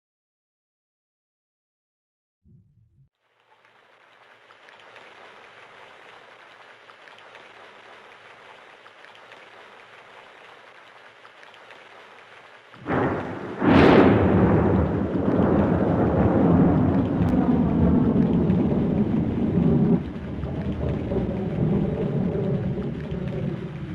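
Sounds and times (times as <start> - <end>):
rain pattering: 3.2 - 23.9
thunder rumbling: 12.8 - 23.9
thunderclap: 12.8 - 23.9.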